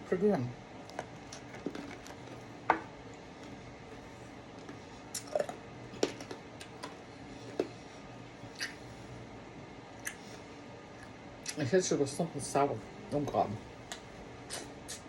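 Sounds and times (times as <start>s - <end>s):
person chewing candy: 4.5s - 7.8s.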